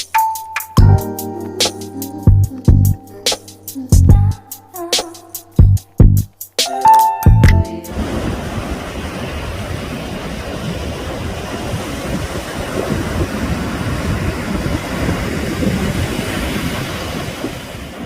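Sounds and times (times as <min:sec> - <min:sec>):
boat engine and water rushing: 0:07.3 - 0:18.0.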